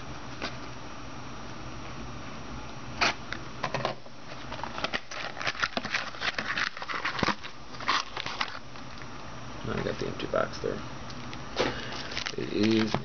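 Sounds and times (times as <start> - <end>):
wrapped packs crinkling: 4.3 - 9.0, 11.6 - 13.0.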